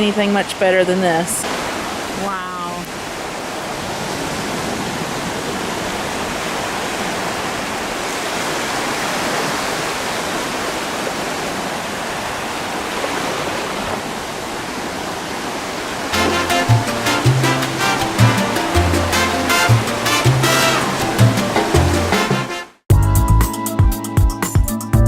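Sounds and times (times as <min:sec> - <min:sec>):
waves washing ashore: 0:00.9 - 0:22.8
music: 0:16.2 - 0:25.0.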